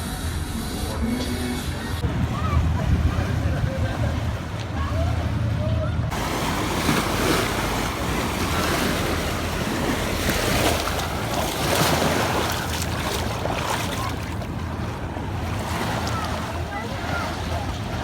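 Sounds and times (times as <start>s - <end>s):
wind buffeting microphone: 2.0s - 18.0s
surf washing onto beach: 6.1s - 18.0s.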